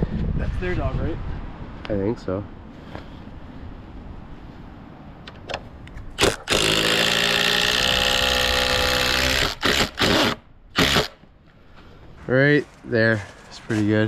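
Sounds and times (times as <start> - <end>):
power driver driving screw into wood: 6.2 - 11.2.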